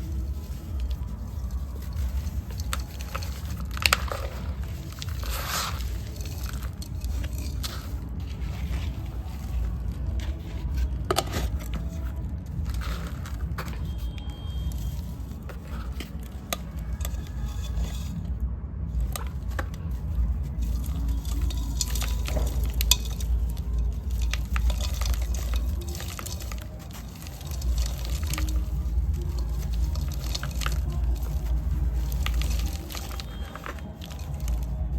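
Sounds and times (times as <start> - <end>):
sand crumbling and crunching: 0.0 - 18.2, 18.9 - 34.9
steady low rumble: 0.0 - 34.9.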